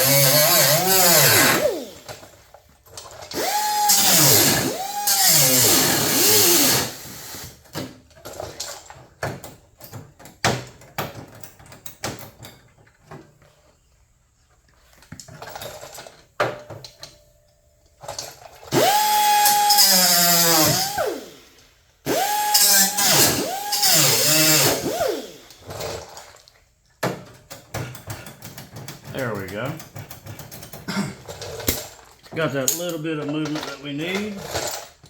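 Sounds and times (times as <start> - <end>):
grinding tool whining on steel: 0.0 - 2.1, 3.4 - 7.1, 18.7 - 21.4, 22.1 - 25.6.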